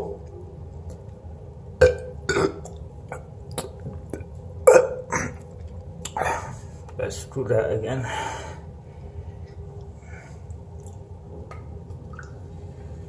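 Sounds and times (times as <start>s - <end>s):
person burping: 1.8s - 3.2s, 4.7s - 5.4s.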